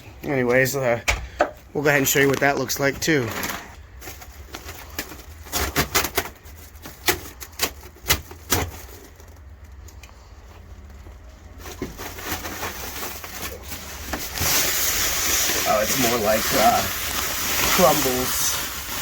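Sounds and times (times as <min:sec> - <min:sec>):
feed pouring hiss: 0:13.8 - 0:19.0.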